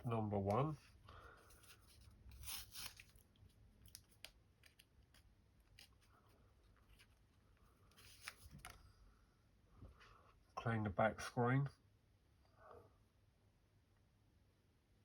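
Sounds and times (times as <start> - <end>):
sachet crinkling and tearing: 1.6 - 6.0.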